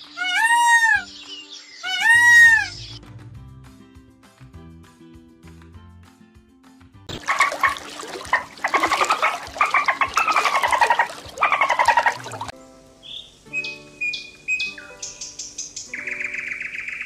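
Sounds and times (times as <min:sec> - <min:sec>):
soft background music: 0:00.0 - 0:17.0
animal harsh calls: 0:00.1 - 0:01.1, 0:01.8 - 0:02.9, 0:07.2 - 0:12.5.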